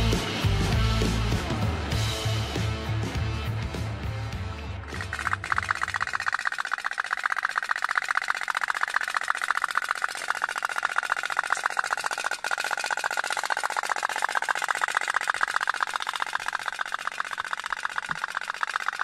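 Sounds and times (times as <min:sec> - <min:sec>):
toy steam boat popping: 0:04.9 - 0:19.0.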